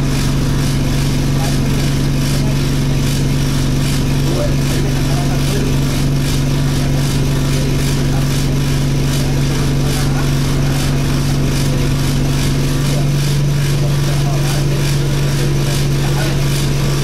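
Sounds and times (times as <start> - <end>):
bus cabin vibration drone: 0.0 - 17.0.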